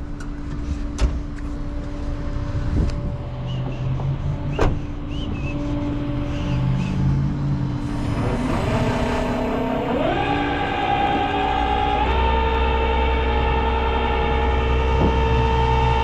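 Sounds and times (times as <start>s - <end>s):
tow truck engine humming: 1.4s - 16.0s
winch running: 7.8s - 16.0s.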